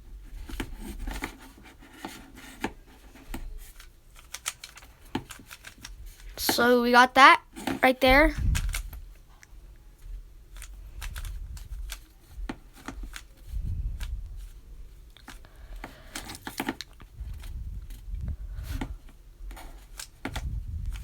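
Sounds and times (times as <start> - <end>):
plastic puzzle cube clicking: 3.7 - 6.4, 8.6 - 9.0, 10.5 - 12.1, 12.7 - 14.2, 19.8 - 21.0.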